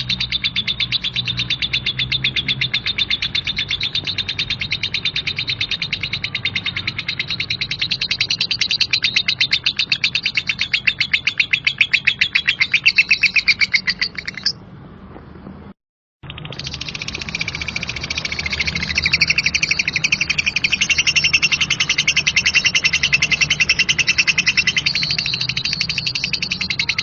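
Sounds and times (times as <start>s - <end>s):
lovebird chattering trill: 0.0s - 14.6s, 16.2s - 27.0s.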